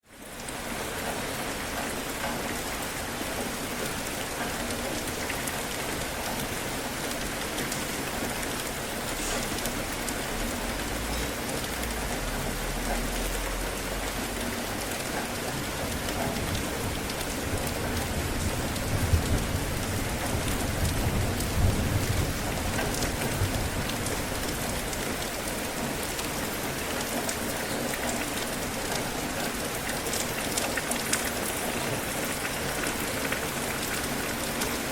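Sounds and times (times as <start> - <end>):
heavy rain falling: 0.0 - 34.9
thunder rumbling: 16.4 - 24.9.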